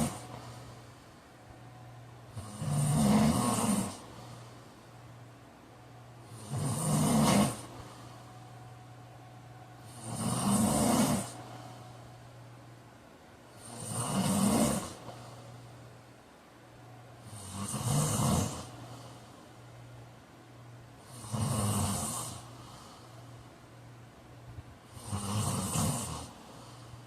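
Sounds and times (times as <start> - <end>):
man snoring: 0.0 - 0.6, 2.3 - 4.5, 6.2 - 8.2, 9.8 - 11.8, 13.5 - 15.4, 17.2 - 19.2, 21.0 - 23.0, 24.9 - 27.0.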